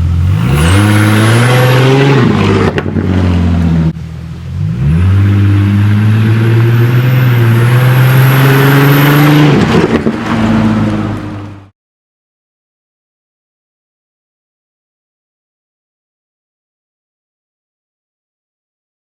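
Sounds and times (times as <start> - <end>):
car engine revving: 0.0 - 11.7.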